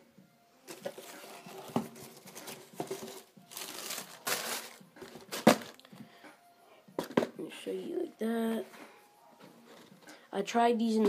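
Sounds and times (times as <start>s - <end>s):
packaging paper crinkling: 0.7s - 5.9s.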